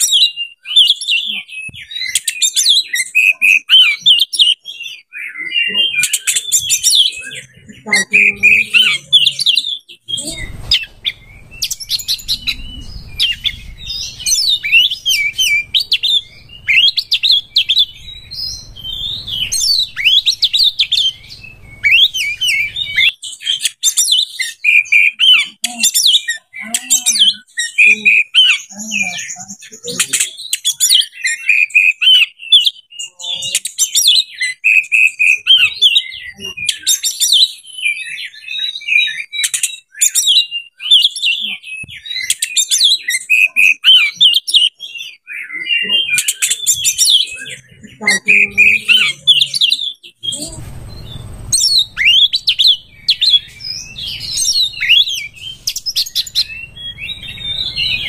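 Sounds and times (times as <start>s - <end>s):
songbird singing: 0.0s - 58.0s
low background hum: 6.7s - 23.2s, 46.8s - 58.0s.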